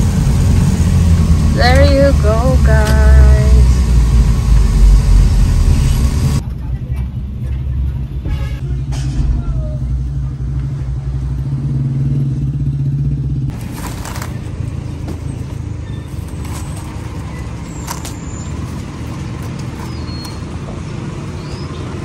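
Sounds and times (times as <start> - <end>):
road noise rumble: 0.0 - 22.0
vehicle engine hum: 0.0 - 22.0.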